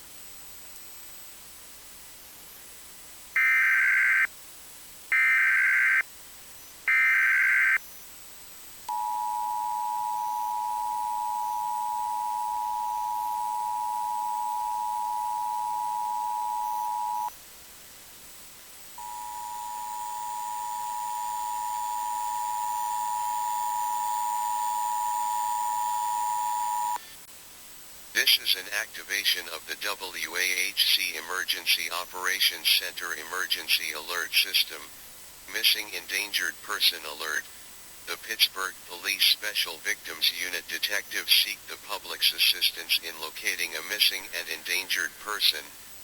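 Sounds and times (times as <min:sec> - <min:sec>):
two-tone alert signal: 0:08.9 - 0:17.3, 0:19.0 - 0:27.0
warbling data burst tones: 0:08.9 - 0:17.3.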